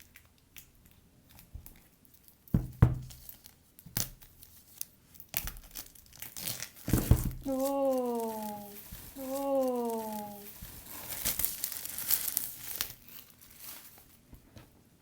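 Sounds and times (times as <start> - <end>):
packaging tearing and crinkling: 3.2 - 14.2.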